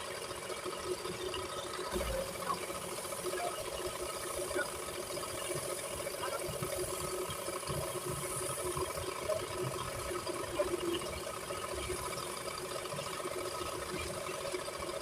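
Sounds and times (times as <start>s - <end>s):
mechanical whir: 0.0s - 15.0s.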